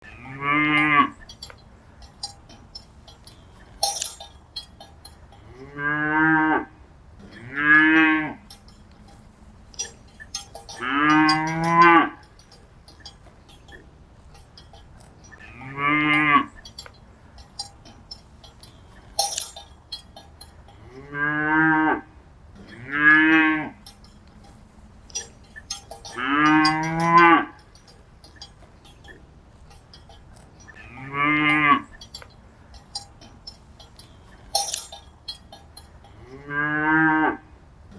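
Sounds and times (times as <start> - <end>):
cattle mooing: 0.0 - 1.4, 5.3 - 9.2, 9.8 - 12.3, 15.3 - 16.8, 20.7 - 24.0, 25.1 - 27.6, 30.7 - 32.3, 36.0 - 37.5
faint clinks and ticks: 0.0 - 37.9.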